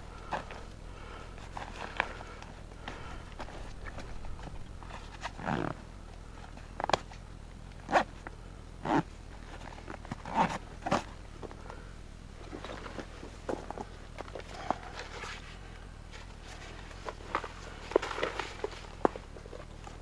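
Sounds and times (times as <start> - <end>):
person breathing hard: 0.0 - 4.5.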